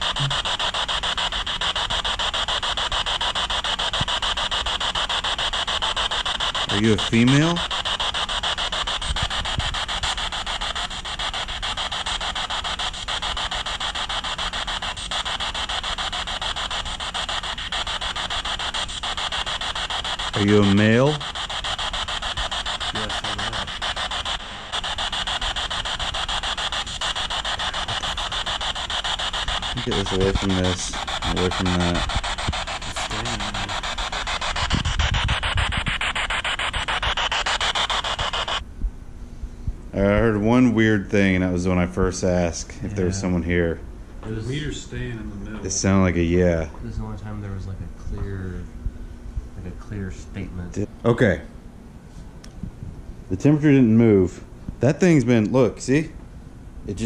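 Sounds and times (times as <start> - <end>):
stuttering radio static: 0.0 - 38.6, 41.4 - 43.6.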